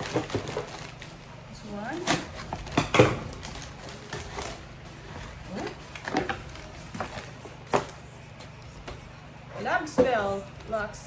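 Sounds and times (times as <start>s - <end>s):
packaging clicks and knocks: 0.0s - 1.1s, 2.0s - 4.7s.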